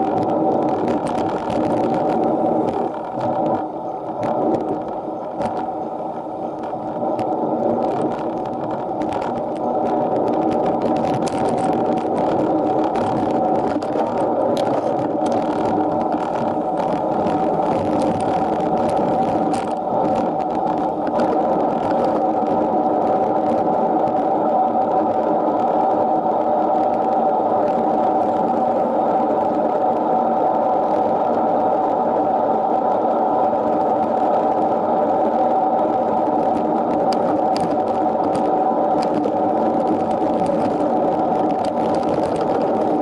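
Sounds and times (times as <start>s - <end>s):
small clicks and rattles: 0.0s - 5.7s, 6.5s - 24.2s, 36.1s - 43.0s
bike road and drivetrain rumble: 0.0s - 43.0s.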